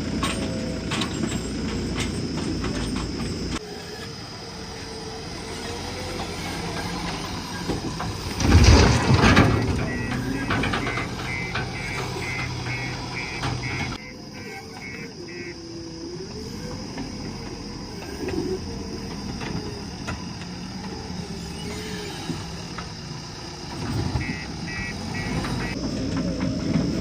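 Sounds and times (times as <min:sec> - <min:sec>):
backhoe engine hum: 0:00.0 - 0:27.0
rapid repeated beeping: 0:09.8 - 0:15.6, 0:24.2 - 0:25.8.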